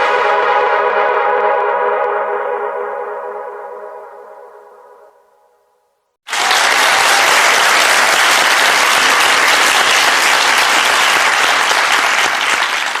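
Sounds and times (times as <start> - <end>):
audience applause: 6.2 - 13.0.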